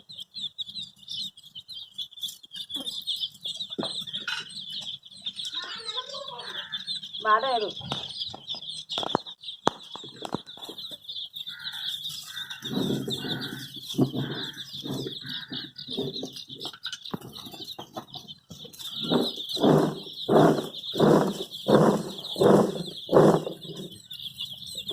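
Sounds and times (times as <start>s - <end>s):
baby chicks peeping: 0.0s - 24.9s
noisy rustling: 11.6s - 24.9s.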